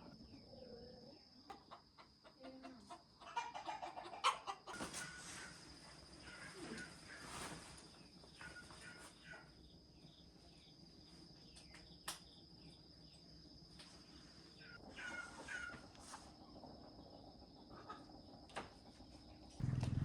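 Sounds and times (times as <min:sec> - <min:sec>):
crickets trilling: 0:00.0 - 0:20.0.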